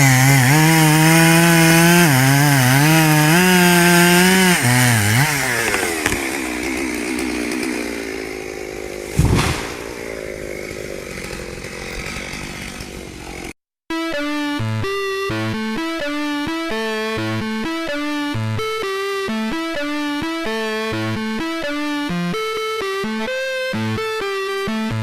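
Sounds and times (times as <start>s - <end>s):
chainsaw cutting: 0.0s - 13.6s
heavy thud: 9.1s - 10.2s
music: 13.9s - 25.0s.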